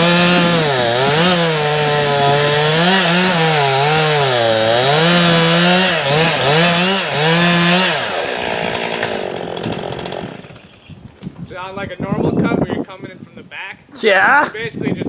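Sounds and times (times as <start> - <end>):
chainsaw cutting into tree trunk: 0.0 - 11.4.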